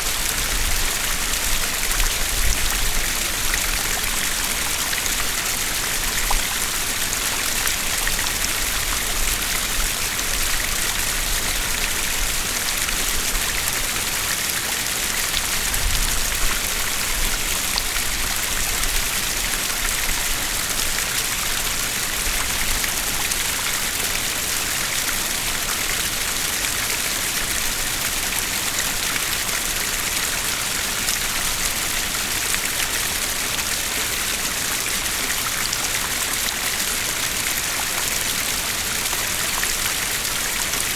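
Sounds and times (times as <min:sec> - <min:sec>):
streams splashing over rocks: 0:00.0 - 0:40.9.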